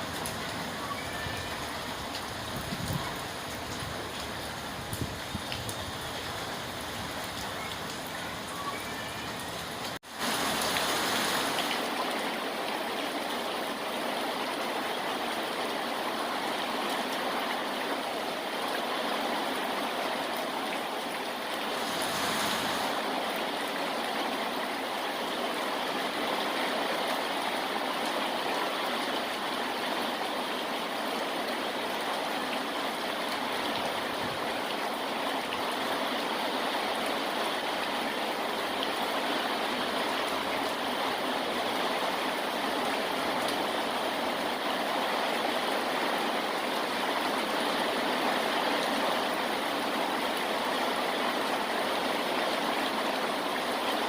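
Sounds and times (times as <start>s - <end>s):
rushing water: 0.0s - 54.0s.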